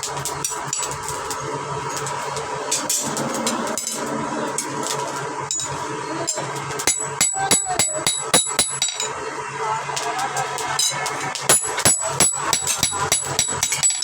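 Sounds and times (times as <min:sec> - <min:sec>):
hammer striking steel on anvil: 0:06.8 - 0:09.2, 0:11.5 - 0:14.0.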